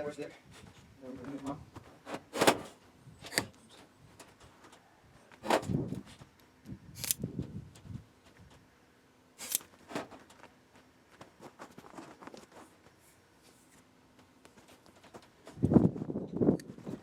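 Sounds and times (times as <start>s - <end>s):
short sharp clicks: 7.0s - 7.2s, 9.4s - 9.7s
rustling: 9.4s - 10.2s.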